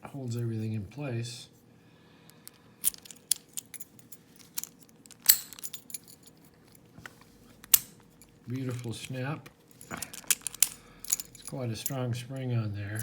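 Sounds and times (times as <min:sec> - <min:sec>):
padlock shackle snapping open: 0:02.4 - 0:03.9, 0:04.5 - 0:06.1, 0:07.6 - 0:08.1, 0:09.8 - 0:11.6
padlock and key rattling: 0:02.4 - 0:06.8, 0:07.6 - 0:13.0.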